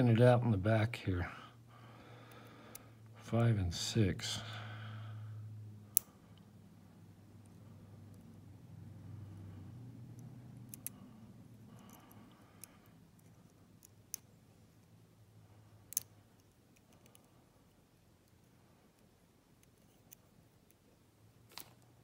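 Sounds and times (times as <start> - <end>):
lock pick clicking in padlock: 15.9 - 16.1.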